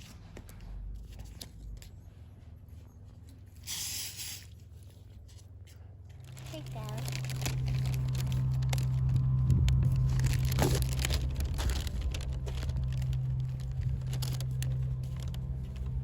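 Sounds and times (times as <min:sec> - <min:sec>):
steady low hum: 0:05.0 - 0:16.0.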